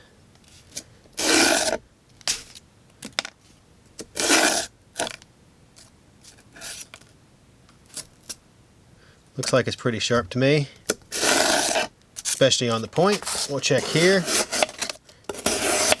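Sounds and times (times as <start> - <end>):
knife blade slicing: 1.2 - 1.8, 11.1 - 12.4, 13.1 - 16.0
short scrapes and taps: 10.9 - 16.0.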